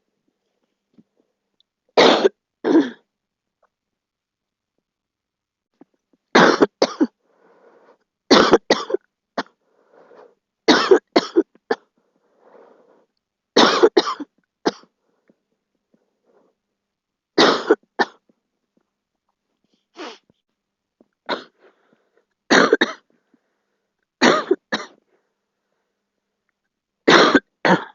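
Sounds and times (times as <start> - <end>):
girl coughing: 2.0 - 3.0, 6.4 - 7.2, 8.3 - 9.5, 10.7 - 11.9, 13.6 - 14.8, 17.4 - 18.2, 21.3 - 21.6, 22.5 - 23.0, 24.2 - 25.0, 27.1 - 27.9.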